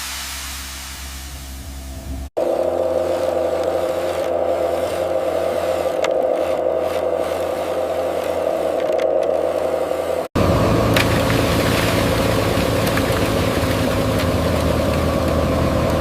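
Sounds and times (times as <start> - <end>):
excavator engine running: 0.3 - 16.0.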